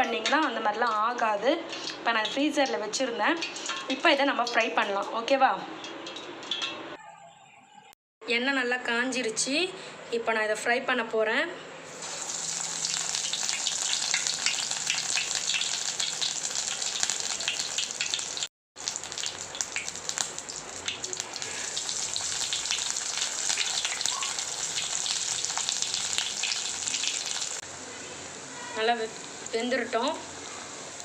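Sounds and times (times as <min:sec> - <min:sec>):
food deep-frying in hot oil: 0:00.2 - 0:05.1, 0:11.9 - 0:31.0.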